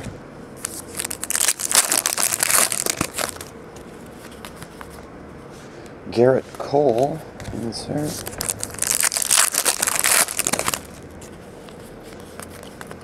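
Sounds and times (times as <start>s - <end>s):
wrapper crinkling: 0.6s - 3.5s, 8.2s - 11.0s.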